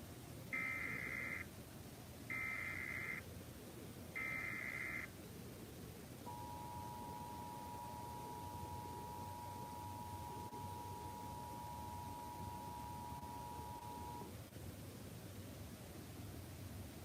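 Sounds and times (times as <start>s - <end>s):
warbling data tones: 0.6s - 1.5s, 2.3s - 3.2s, 4.2s - 5.1s, 6.3s - 14.3s
two-tone attention signal: 6.3s - 14.3s.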